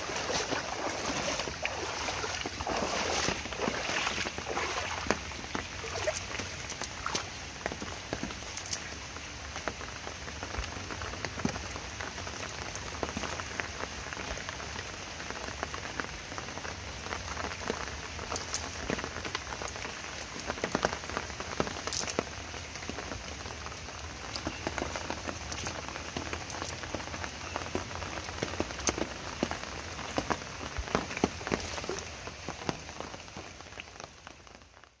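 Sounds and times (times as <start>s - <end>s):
steady rain hiss: 0.0s - 35.0s
raindrop taps: 0.1s - 8.8s, 11.2s - 11.7s, 27.7s - 34.1s.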